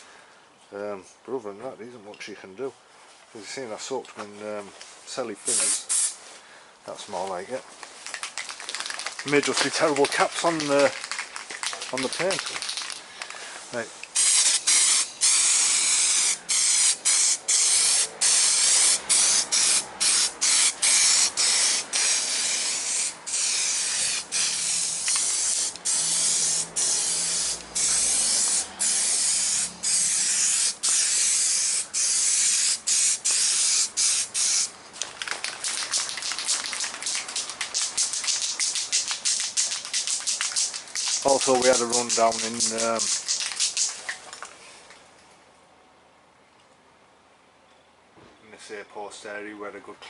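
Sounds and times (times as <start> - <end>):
aerosol spray can bursts: 5.5 - 6.2, 14.1 - 44.1
spray can rattling: 5.5 - 6.2, 7.8 - 13.4, 14.1 - 44.5.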